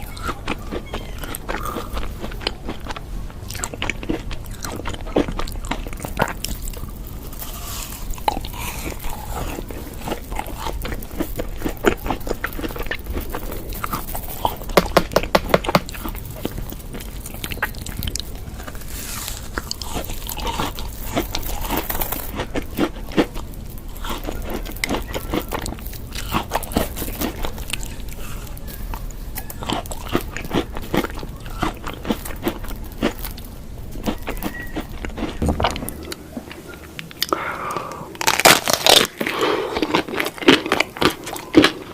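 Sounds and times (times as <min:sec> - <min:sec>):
person chewing and crunching food: 0:00.0 - 0:41.9
wet mouth clicks: 0:34.2 - 0:38.0.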